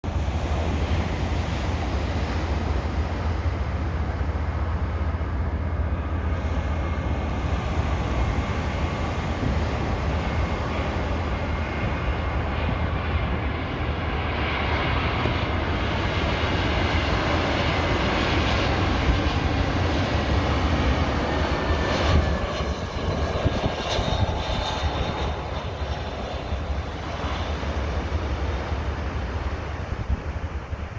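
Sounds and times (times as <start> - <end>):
airliner engines rumbling: 0.0 - 30.9
faint engine whine: 0.0 - 30.9.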